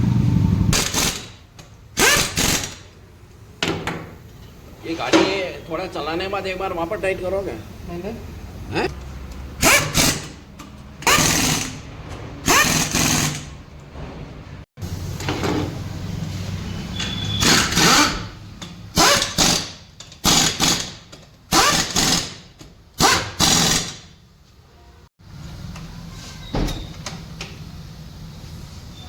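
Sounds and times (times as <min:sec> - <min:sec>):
pneumatic impact wrench bursts: 0:00.7 - 0:01.4, 0:02.0 - 0:02.9, 0:09.6 - 0:10.4, 0:11.0 - 0:13.6, 0:17.0 - 0:24.2.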